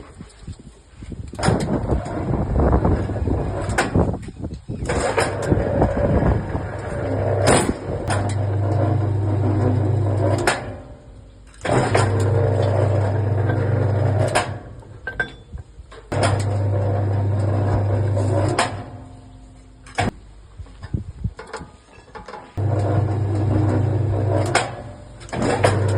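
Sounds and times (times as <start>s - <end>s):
electric motor and gearbox running: 4.8s - 14.9s, 16.1s - 19.2s, 22.6s - 25.9s
metallic clanks: 6.7s - 20.2s.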